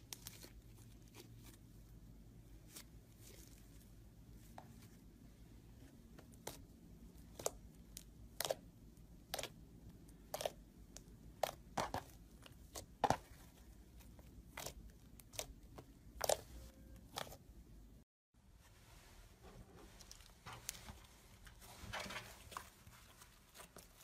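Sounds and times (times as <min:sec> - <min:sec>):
crunchy slime crackling: 0:06.3 - 0:09.6, 0:10.2 - 0:17.4.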